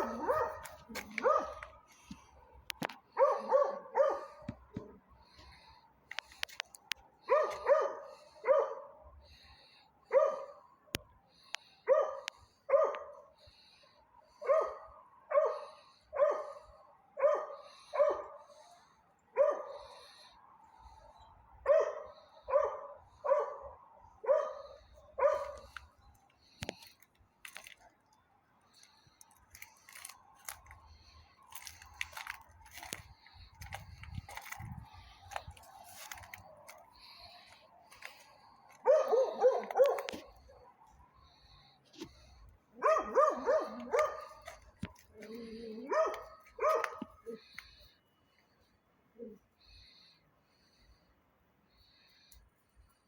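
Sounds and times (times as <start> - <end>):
dog barking: 0.0 - 1.8, 3.1 - 5.0, 7.2 - 9.0, 10.1 - 10.7, 11.8 - 13.3, 14.4 - 18.5, 19.3 - 20.0, 21.6 - 25.7, 38.8 - 40.3, 42.8 - 44.6, 45.5 - 47.4.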